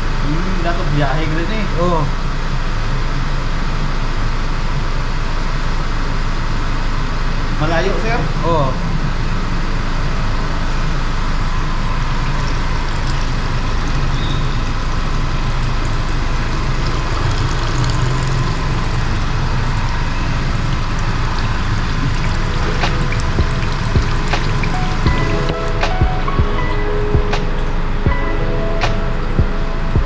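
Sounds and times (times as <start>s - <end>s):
oil pouring into pan: 21.0s - 27.9s
low machine hum: 22.0s - 28.1s.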